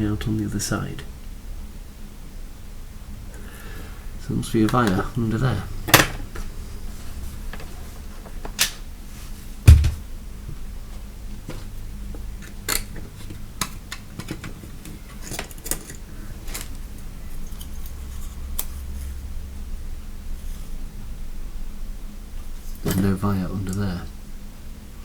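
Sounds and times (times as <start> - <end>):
loud thump: 9.7 - 10.0.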